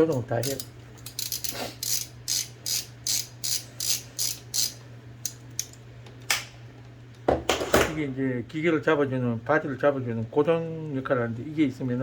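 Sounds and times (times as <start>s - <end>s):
hand ratchet clicking: 0.0s - 5.8s.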